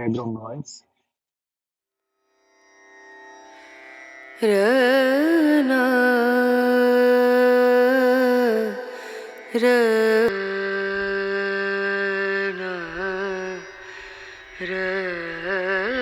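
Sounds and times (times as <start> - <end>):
person singing ornamented notes: 4.4 - 16.0.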